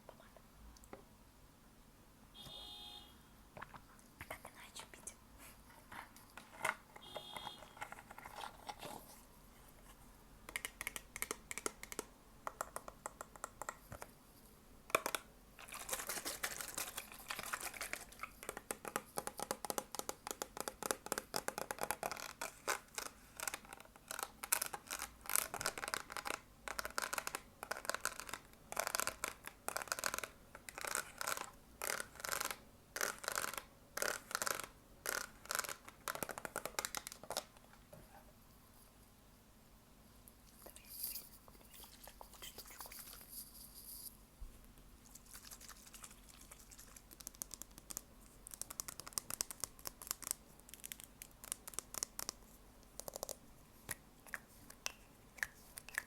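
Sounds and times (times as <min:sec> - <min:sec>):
light tapping and scratching: 0:40.5 - 0:44.2.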